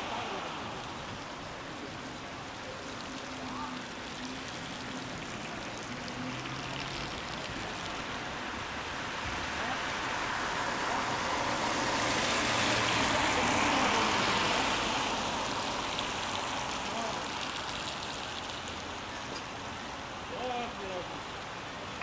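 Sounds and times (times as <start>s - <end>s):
car tyres on wet road: 0.0s - 22.0s
rain falling on wet street: 0.0s - 22.0s.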